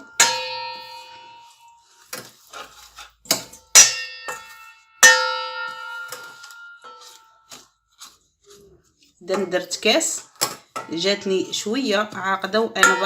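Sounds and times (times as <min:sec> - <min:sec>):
metal spoon knocking on metal pot: 0:00.0 - 0:01.6, 0:03.3 - 0:07.2, 0:10.4 - 0:13.0.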